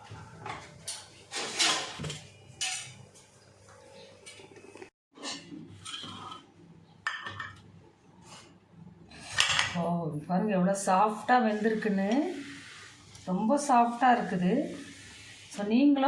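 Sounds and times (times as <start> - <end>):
utensils clinking and scraping dishes: 0.8 - 3.0, 5.2 - 6.5.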